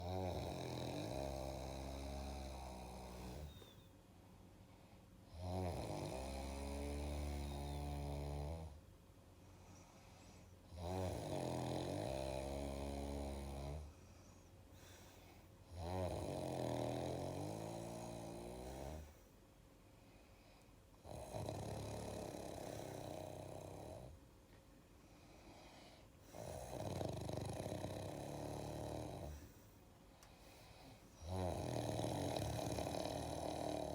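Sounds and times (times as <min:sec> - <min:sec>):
loud snoring: 0:00.0 - 0:03.8, 0:05.3 - 0:08.8, 0:10.7 - 0:14.0, 0:15.7 - 0:19.2, 0:21.0 - 0:24.2, 0:26.2 - 0:29.5, 0:31.2 - 0:33.9
quiet breathing: 0:00.0 - 0:33.9.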